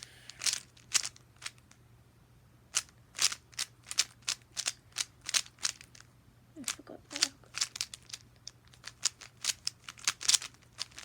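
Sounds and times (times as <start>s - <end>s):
puzzle cube plastic clicks: 7.1s - 11.0s.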